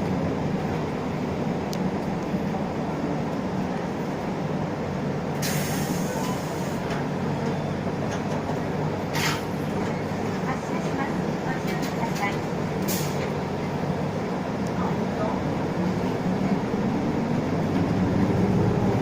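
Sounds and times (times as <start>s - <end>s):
bus engine and road noise: 0.0s - 19.0s
air hiss from bus air system: 5.4s - 6.8s, 9.1s - 9.5s, 12.8s - 13.2s.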